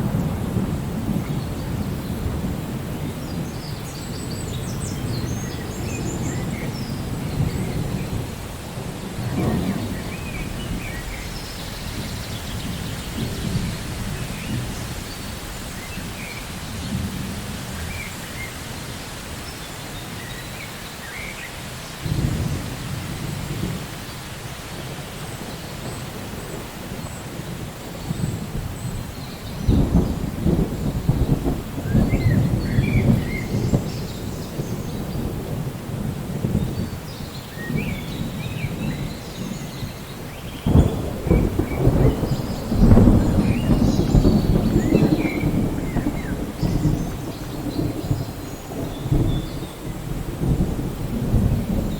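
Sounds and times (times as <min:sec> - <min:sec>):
thunder rumbling: 0:00.0 - 0:19.5, 0:22.0 - 0:51.9
steady rain: 0:00.0 - 0:51.9.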